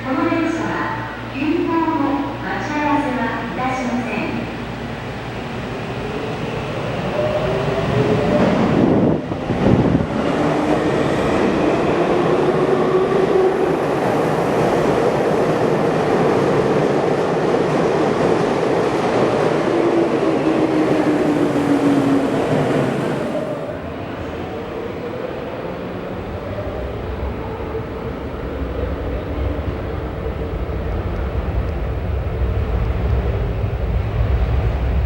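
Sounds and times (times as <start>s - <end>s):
train wheel noise: 7.8s - 23.5s.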